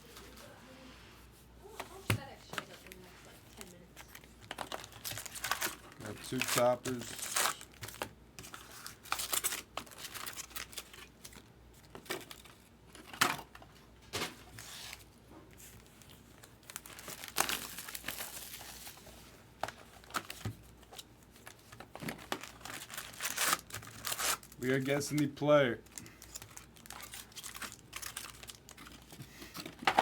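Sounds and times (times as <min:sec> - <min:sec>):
wrappers crinkling and tearing: 0:02.8 - 0:12.7, 0:15.7 - 0:29.2.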